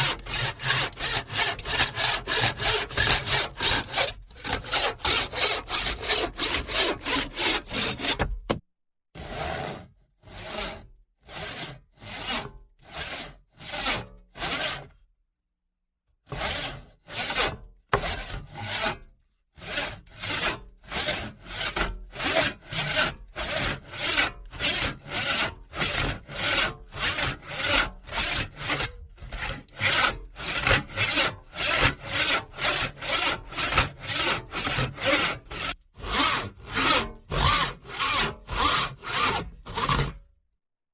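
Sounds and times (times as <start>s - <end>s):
hand saw cutting wood: 0.0s - 8.6s, 9.2s - 15.0s, 16.2s - 40.3s.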